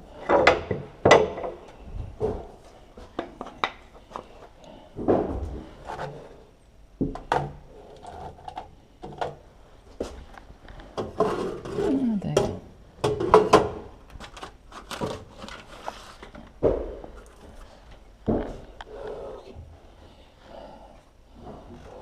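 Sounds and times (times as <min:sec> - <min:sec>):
knocks and scrapes of handling: 0:00.1 - 0:18.8
man breathing heavily: 0:18.4 - 0:22.0.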